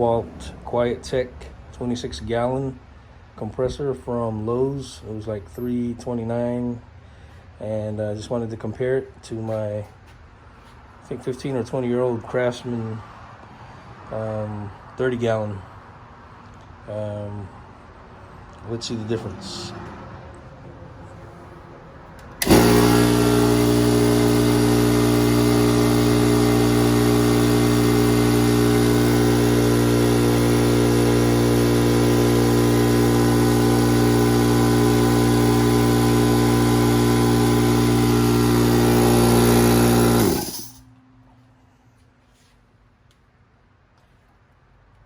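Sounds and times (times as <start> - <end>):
electric air compressor running: 22.4 - 40.8.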